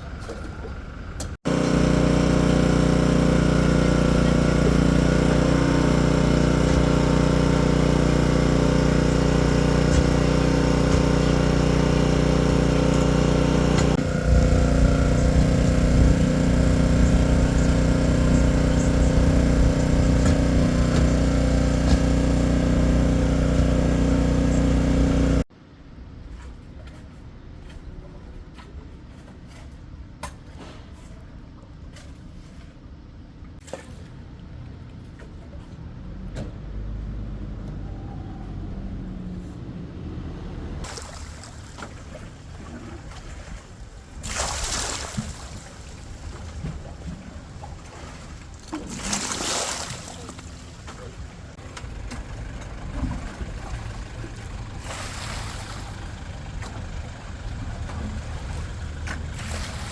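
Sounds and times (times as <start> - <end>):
combustion engine running loudly: 0.2 - 25.5, 50.2 - 59.6.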